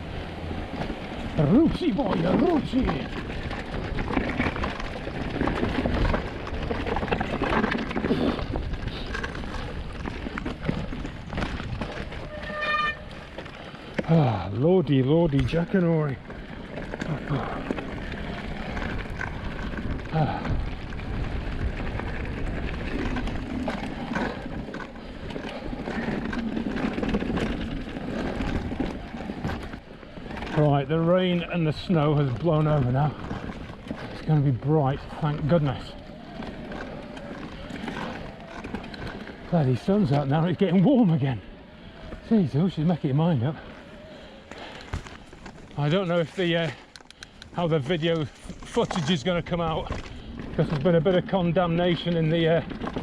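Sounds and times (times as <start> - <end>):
bike rattling and knocking: 0.0 - 53.0
tyre noise: 0.0 - 53.0
bike knocks and rattles: 0.7 - 14.4.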